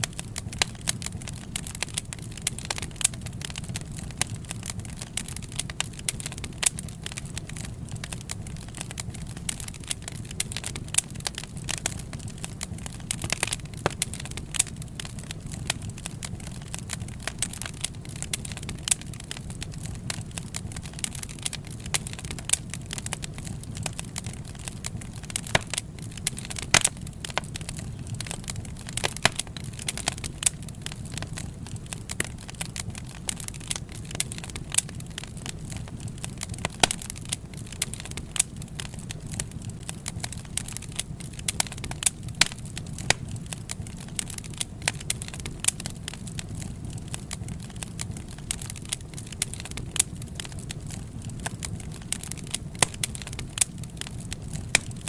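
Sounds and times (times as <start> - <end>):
fire rumbling: 0.0 - 55.0
logs popping and crackling: 0.0 - 55.0.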